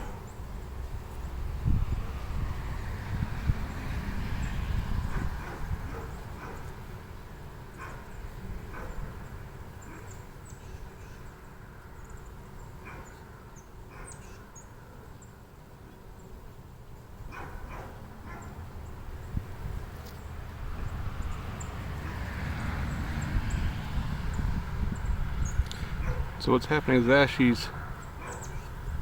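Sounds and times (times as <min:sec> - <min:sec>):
honeybees humming: 0:00.0 - 0:04.5, 0:05.7 - 0:29.0
wind rumbling on microphone: 0:00.0 - 0:07.1, 0:07.7 - 0:11.0, 0:17.2 - 0:29.0.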